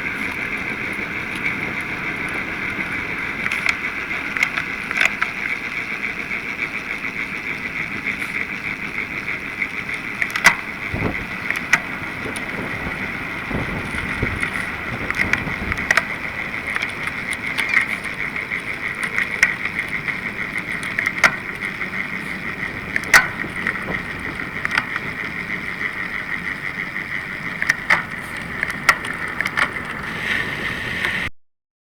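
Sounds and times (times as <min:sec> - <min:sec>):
wind and road noise: 0:00.0 - 0:31.3
sharp clicks: 0:09.6 - 0:30.2.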